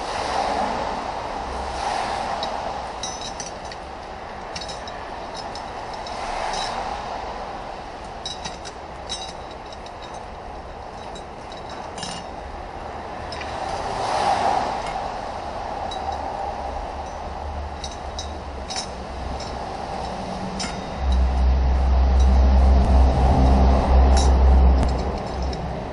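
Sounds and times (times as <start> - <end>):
low rumble: 0.0 - 25.9
steady background hum: 0.0 - 25.9
light metal clinks: 2.3 - 7.1, 7.9 - 12.6, 13.2 - 25.9.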